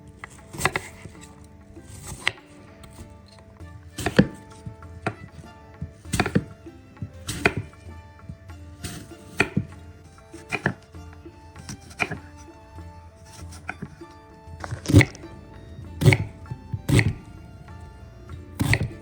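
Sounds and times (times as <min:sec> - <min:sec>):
knife chopping on cutting board: 0:00.2 - 0:01.2, 0:01.9 - 0:03.1, 0:04.0 - 0:05.4, 0:06.0 - 0:06.5, 0:07.1 - 0:07.8, 0:08.8 - 0:10.8, 0:11.7 - 0:12.4, 0:14.6 - 0:15.3, 0:16.0 - 0:17.4, 0:18.4 - 0:19.0.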